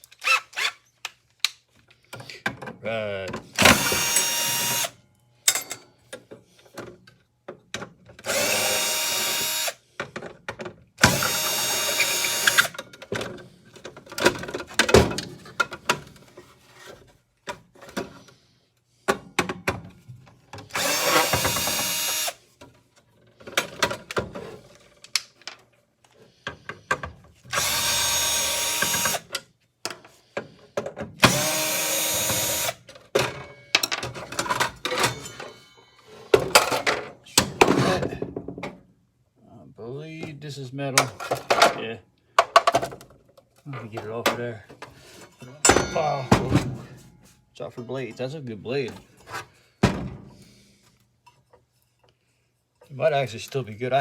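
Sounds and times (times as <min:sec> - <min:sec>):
power drill running: 0:03.6 - 0:04.9, 0:08.2 - 0:09.8, 0:11.0 - 0:12.8, 0:20.7 - 0:22.4, 0:27.5 - 0:29.3, 0:31.2 - 0:32.8
clicks and knocks of parts: 0:32.1 - 0:35.6, 0:42.4 - 0:43.6.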